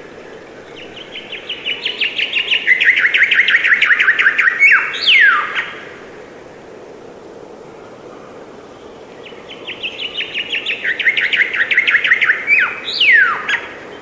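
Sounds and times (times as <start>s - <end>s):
bird singing: 0.0s - 5.8s, 7.8s - 14.0s.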